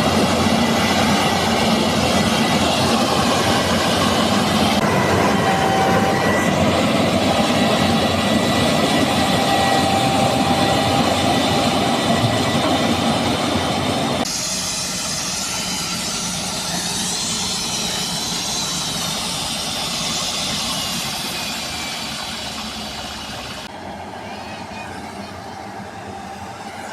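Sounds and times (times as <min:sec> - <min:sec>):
mechanical whine: 0:14.2 - 0:23.7.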